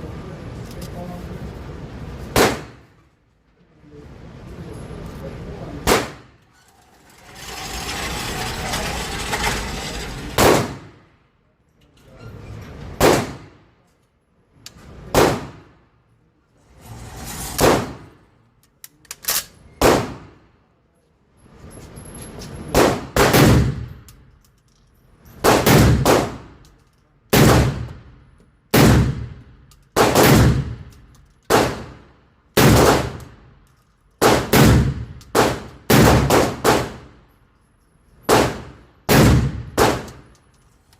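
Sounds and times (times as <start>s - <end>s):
shotgun shots echoing: 2.4s - 2.8s, 5.8s - 6.3s, 30.0s - 30.9s, 34.2s - 37.1s, 38.3s - 40.2s.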